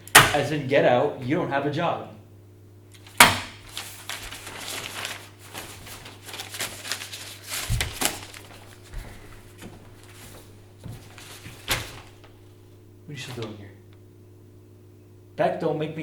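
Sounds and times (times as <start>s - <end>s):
steady low hum: 0.0s - 16.0s
objects rustling and clicking: 2.9s - 12.4s.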